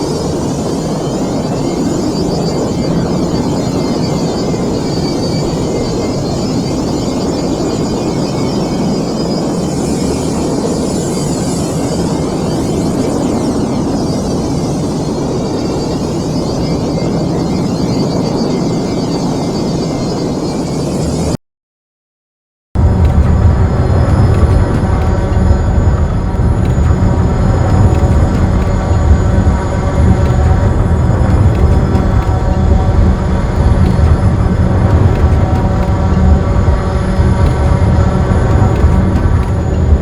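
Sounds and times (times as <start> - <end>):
spaceship engine hum: 0.0 - 21.4, 22.8 - 40.0
wavering high tones: 22.8 - 40.0.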